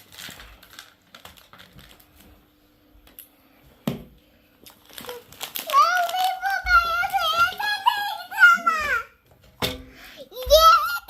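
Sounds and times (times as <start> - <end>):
sweet packaging crinkling: 0.0 - 3.4, 4.4 - 8.9.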